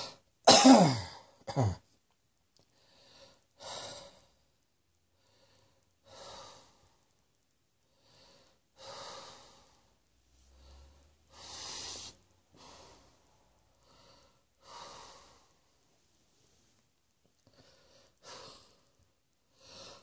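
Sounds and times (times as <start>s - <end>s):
person breathing: 0.0s - 0.2s, 2.7s - 4.4s, 5.2s - 7.1s, 7.8s - 16.8s, 17.4s - 20.0s.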